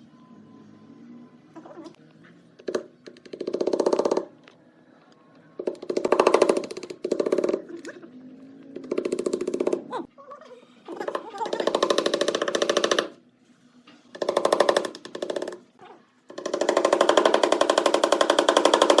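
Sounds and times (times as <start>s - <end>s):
power tool hammering: 11.6s - 13.2s, 14.2s - 15.6s, 16.3s - 19.0s.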